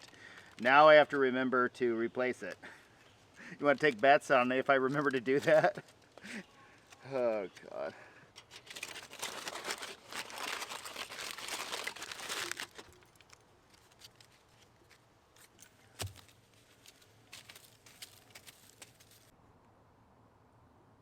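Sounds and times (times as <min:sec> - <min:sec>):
aluminium foil crinkling: 0:08.3 - 0:19.3.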